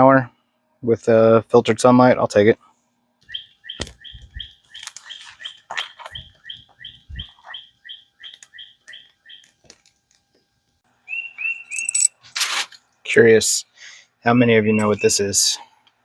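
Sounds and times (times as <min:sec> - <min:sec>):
songbird singing: 0:03.2 - 0:09.7, 0:11.0 - 0:12.2, 0:14.3 - 0:15.7.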